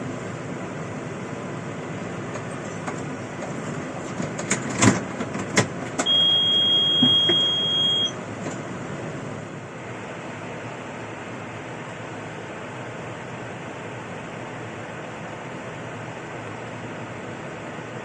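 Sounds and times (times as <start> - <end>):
combine harvester running: 0.0 - 18.0
steady high-pitched tone: 6.1 - 8.2.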